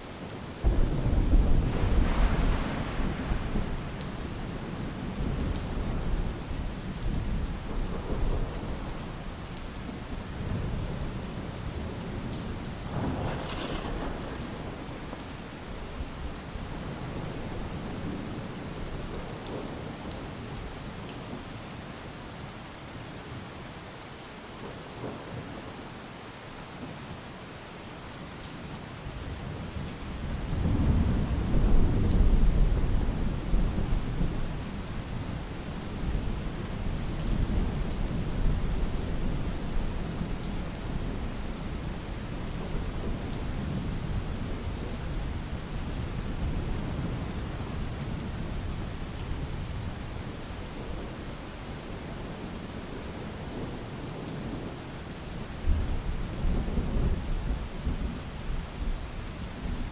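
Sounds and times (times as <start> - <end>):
steady rain: 0.0 - 59.9
thunder rumbling: 0.6 - 9.1, 10.4 - 19.8.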